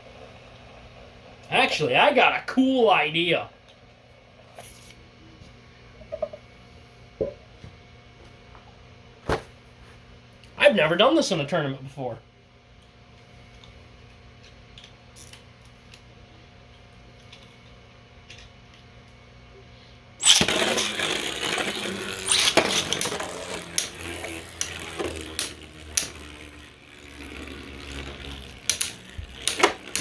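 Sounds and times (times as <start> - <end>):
spinning tops whirring and scraping: 0.0 - 2.3, 20.2 - 30.0
faint steady hum: 0.0 - 30.0
spinning tops clashing: 20.2 - 30.0.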